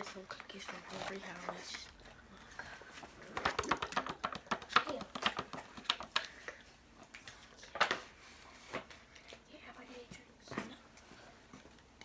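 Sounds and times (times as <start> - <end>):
crisp taps and crackles of packaging: 0.0 - 6.6.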